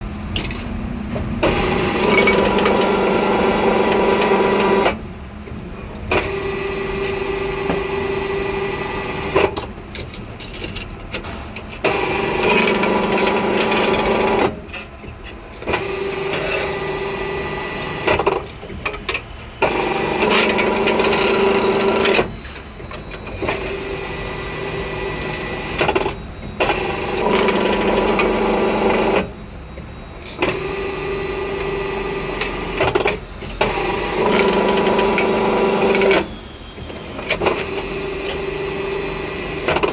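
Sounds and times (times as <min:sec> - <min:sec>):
bending machine motor humming: 0:01.3 - 0:05.4, 0:10.6 - 0:39.6.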